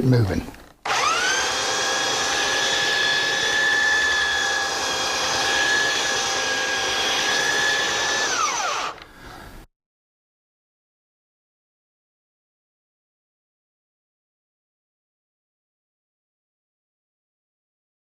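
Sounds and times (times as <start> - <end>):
belt sander whining: 0.8 - 9.1.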